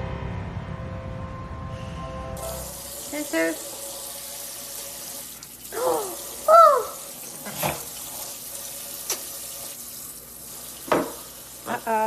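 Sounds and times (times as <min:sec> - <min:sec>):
running tap hissing: 0:02.4 - 0:12.0
parrot calling: 0:05.8 - 0:07.0.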